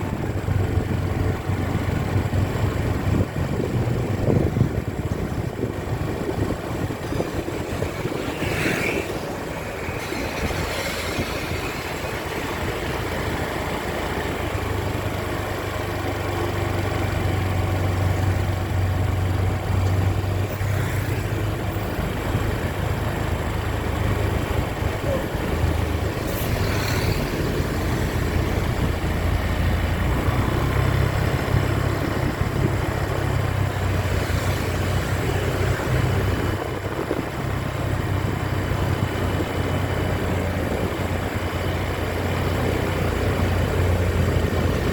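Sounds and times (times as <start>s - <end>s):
bus diesel engine humming: 0.0s - 44.9s
short hissing noises: 8.2s - 12.3s.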